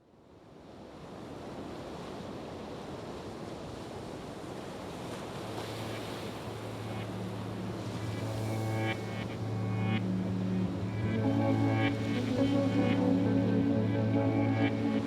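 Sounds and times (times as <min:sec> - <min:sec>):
steady rushing noise: 0:05.8 - 0:15.0
low hum: 0:06.4 - 0:15.0.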